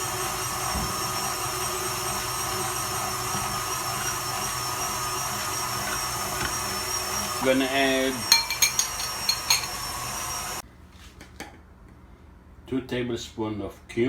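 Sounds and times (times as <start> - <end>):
electric meat grinder whining: 0.0 - 10.6.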